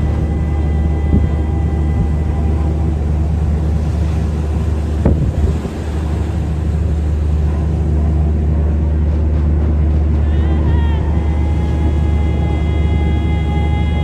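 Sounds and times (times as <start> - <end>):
ship engine drone: 0.0 - 14.0.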